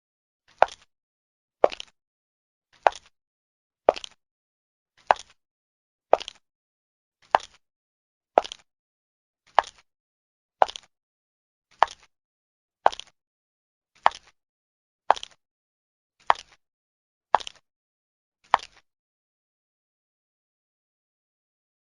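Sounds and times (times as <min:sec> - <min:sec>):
high heel footsteps: 0:00.6 - 0:00.9, 0:01.6 - 0:01.9, 0:02.8 - 0:03.1, 0:03.9 - 0:04.2, 0:05.1 - 0:05.3, 0:06.2 - 0:06.4, 0:07.3 - 0:07.6, 0:08.4 - 0:08.6, 0:09.6 - 0:09.8, 0:10.6 - 0:10.9, 0:12.9 - 0:13.1, 0:15.1 - 0:15.4, 0:17.4 - 0:17.6.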